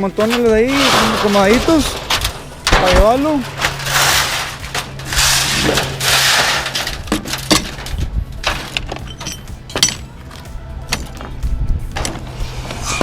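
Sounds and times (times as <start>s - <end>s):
aluminum panels crashing and scraping: 0.0s - 10.2s
metal clattering with sharp knocks: 0.0s - 12.4s.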